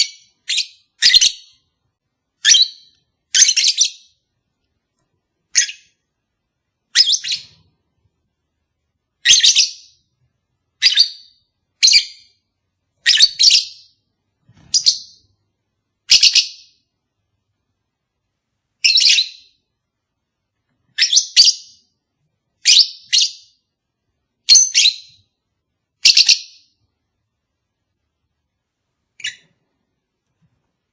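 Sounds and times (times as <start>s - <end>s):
bird shrill chirping calls: 0.0s - 1.6s, 2.4s - 4.1s, 6.9s - 7.6s, 9.2s - 10.0s, 13.0s - 13.9s, 18.8s - 19.6s, 21.0s - 21.8s, 24.5s - 25.2s, 26.0s - 26.7s.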